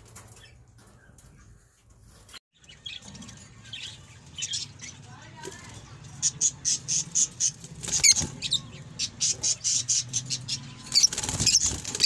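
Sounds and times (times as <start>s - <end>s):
small birds chirping and squawking: 0.0s - 12.0s.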